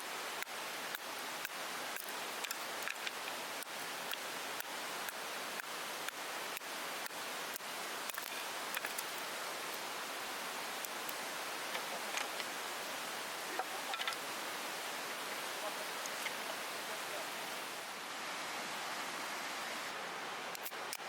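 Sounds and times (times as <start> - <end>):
water dripping: 0.0 - 9.9
river rushing: 0.0 - 21.0.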